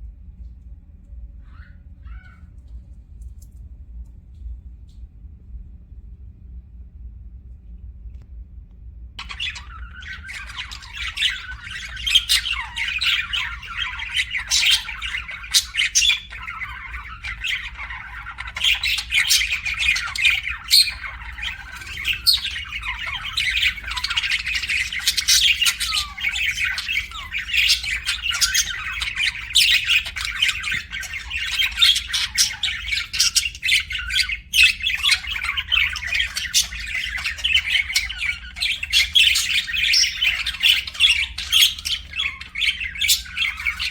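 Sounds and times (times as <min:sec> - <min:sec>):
budgerigars chattering: 0:09.2 - 0:43.9.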